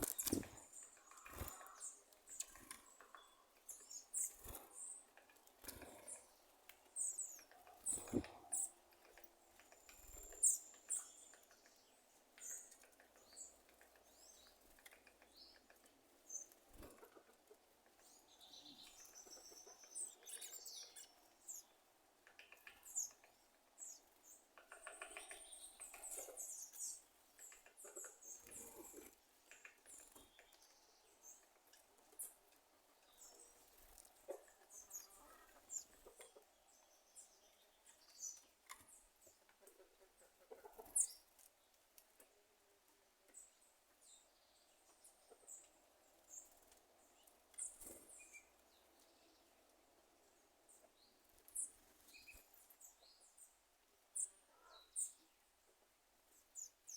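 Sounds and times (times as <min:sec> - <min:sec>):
thrush clicking and chirping: 0:00.0 - 0:11.8.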